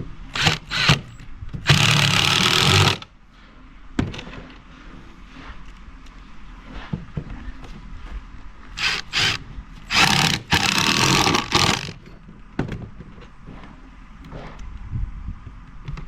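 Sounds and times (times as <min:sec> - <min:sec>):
impact driver driving screw into wood: 0:00.0 - 0:03.1, 0:08.8 - 0:12.0.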